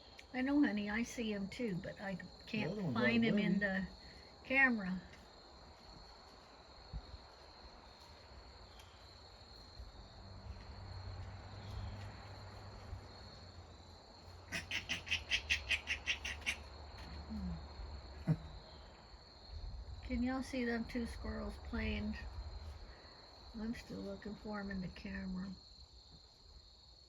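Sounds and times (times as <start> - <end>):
crickets and insects trilling: 0.0 - 27.0
animal chattering call: 14.5 - 16.7
low wind rumble: 19.4 - 23.7.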